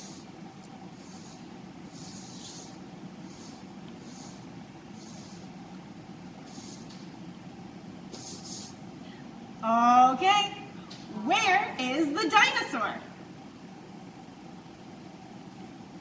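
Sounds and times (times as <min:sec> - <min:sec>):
steady low hiss: 0:00.0 - 0:16.0
cards swishing on a table: 0:01.0 - 0:05.5, 0:08.1 - 0:08.8.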